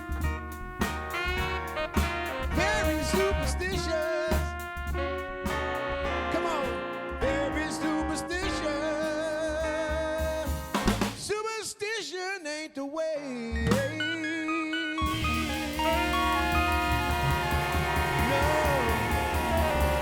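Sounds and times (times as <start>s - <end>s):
keyboard: 0.0s - 11.2s, 13.7s - 20.0s
bass: 0.0s - 11.3s, 13.6s - 14.2s, 15.0s - 20.0s
horns: 0.0s - 11.3s, 13.7s - 20.0s
drums: 0.0s - 11.4s, 13.5s - 14.1s, 15.0s - 20.0s
guitar: 15.0s - 20.0s.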